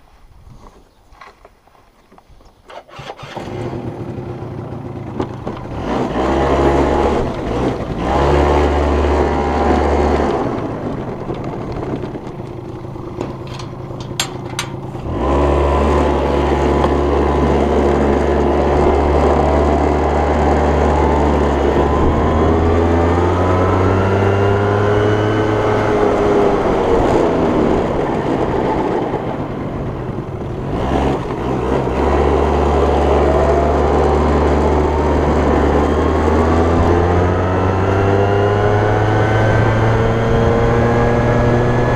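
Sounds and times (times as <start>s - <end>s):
scooter engine revving: 2.7s - 41.9s.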